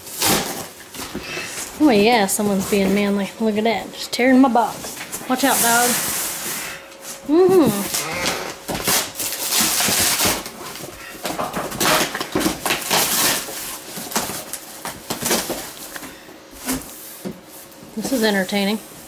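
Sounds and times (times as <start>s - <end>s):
cardboard box tearing: 7.8s - 10.6s, 11.6s - 14.4s.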